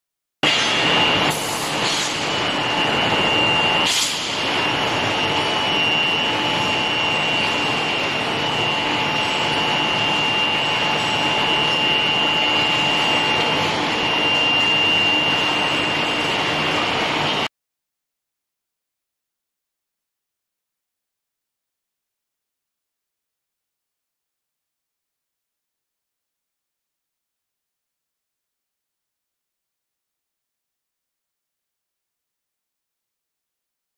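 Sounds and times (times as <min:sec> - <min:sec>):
industrial machinery noise: 0:00.4 - 0:17.5
thin high whine: 0:00.4 - 0:17.5.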